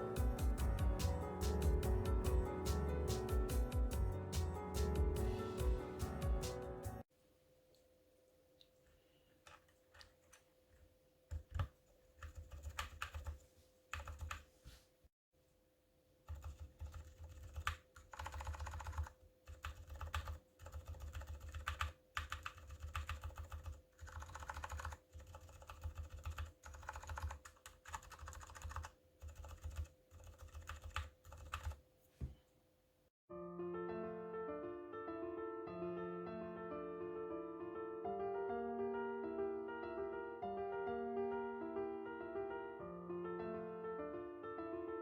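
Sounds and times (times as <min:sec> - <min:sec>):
mechanical keyboard typing: 0:11.3 - 0:14.4, 0:16.3 - 0:31.8.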